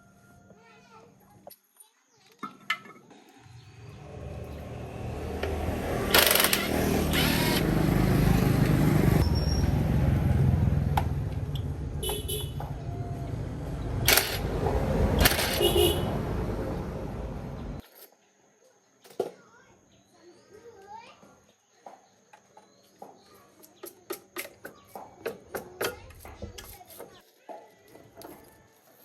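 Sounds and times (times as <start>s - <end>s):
tractor engine rumbling: 3.8s - 17.8s.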